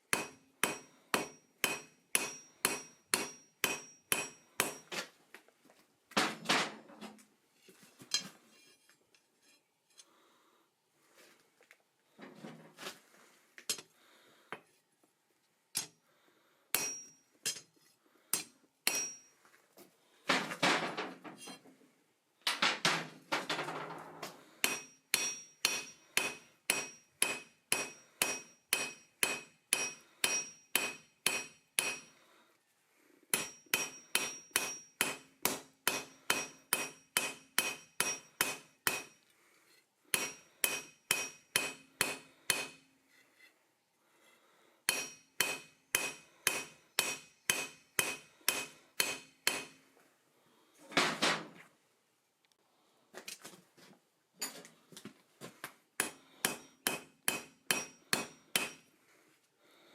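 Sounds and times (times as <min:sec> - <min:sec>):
hammer striking iron on anvil: 0:00.1 - 0:04.9, 0:15.8 - 0:16.0, 0:16.7 - 0:17.7, 0:18.3 - 0:19.3, 0:24.6 - 0:32.2, 0:33.3 - 0:39.2, 0:40.1 - 0:42.9, 0:44.9 - 0:49.8, 0:56.0 - 0:58.9.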